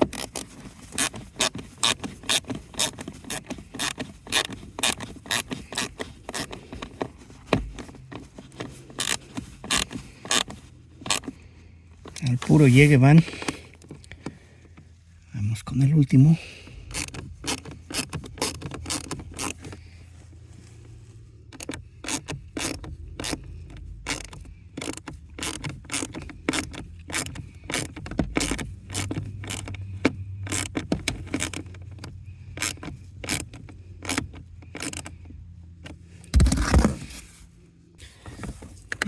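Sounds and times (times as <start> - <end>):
hand ratchet clicking: 0.0 - 7.9, 8.5 - 11.3, 16.9 - 19.7, 21.5 - 35.2.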